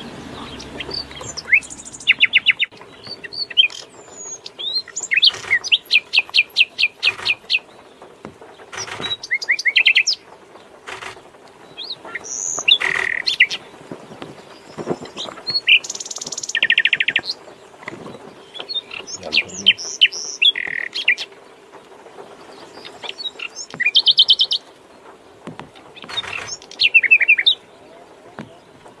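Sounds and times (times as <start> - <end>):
nightingale singing: 0.0 - 7.9, 11.7 - 21.7, 26.0 - 28.9.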